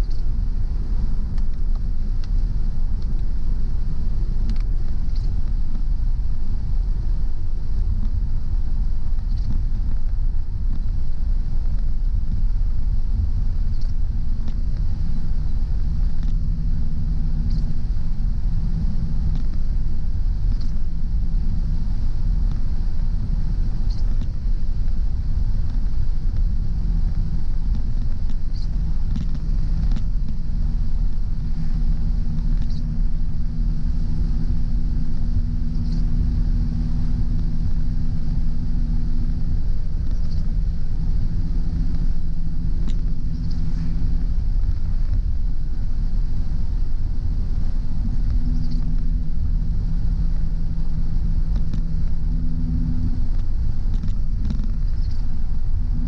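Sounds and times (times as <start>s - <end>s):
hum changing pitch: 0.0s - 56.0s
faint ticks: 1.3s - 3.4s, 4.4s - 5.8s, 9.1s - 11.0s, 13.6s - 15.0s, 16.0s - 16.5s, 17.4s - 17.8s, 20.4s - 20.9s, 27.1s - 30.4s, 31.7s - 33.0s, 35.3s - 37.5s, 40.0s - 40.6s, 48.0s - 49.1s, 53.1s - 55.3s.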